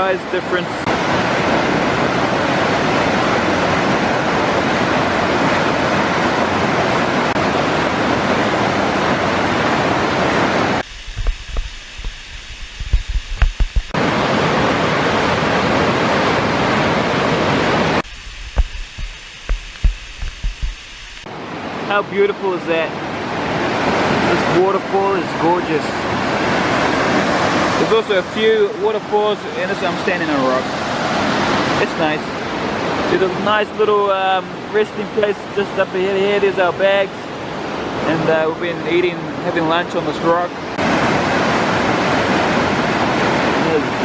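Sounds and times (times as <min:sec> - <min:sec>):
waterfall roaring: 0:00.0 - 0:44.0
wind buffeting microphone: 0:01.2 - 0:14.0, 0:18.0 - 0:21.3.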